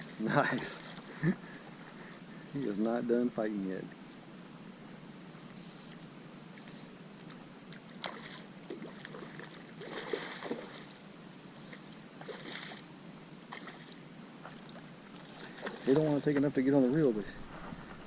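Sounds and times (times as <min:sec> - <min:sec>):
water lapping around a kayak: 0:00.0 - 0:02.4, 0:06.5 - 0:12.9, 0:13.5 - 0:16.2
fish splashing: 0:07.2 - 0:11.0, 0:11.6 - 0:12.9, 0:13.5 - 0:16.2.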